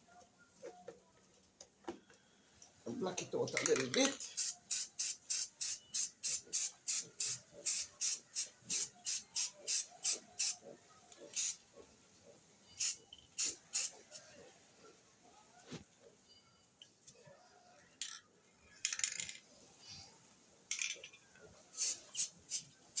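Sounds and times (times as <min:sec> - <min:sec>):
spray paint hissing bursts: 0:04.2 - 0:10.6, 0:11.2 - 0:11.6, 0:12.7 - 0:14.2, 0:21.7 - 0:23.0.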